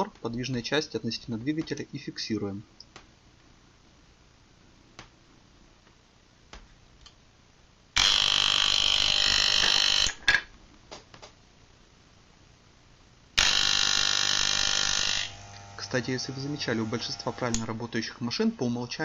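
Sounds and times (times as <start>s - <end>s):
hair clipper buzzing: 8.0s - 10.2s, 13.4s - 17.9s.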